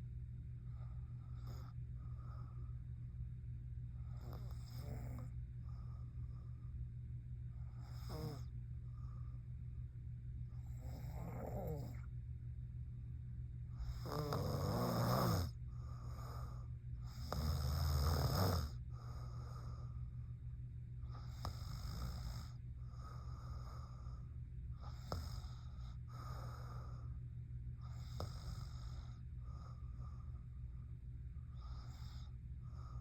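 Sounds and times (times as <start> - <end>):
quiet breaths: 0.0 - 33.0
woman snoring: 4.2 - 5.4, 7.8 - 8.5, 10.8 - 12.1, 13.8 - 19.9, 21.2 - 24.2, 24.8 - 27.0, 27.9 - 29.2.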